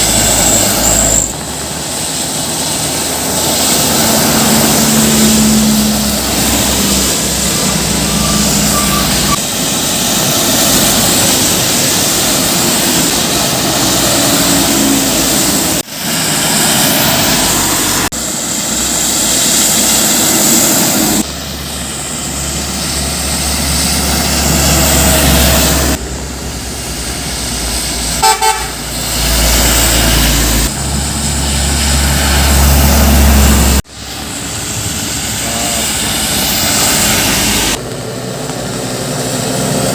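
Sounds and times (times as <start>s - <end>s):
trucks and buses passing: 0.0s - 39.9s
horn toots: 28.1s - 29.0s
multi-tone horn: 28.2s - 29.0s.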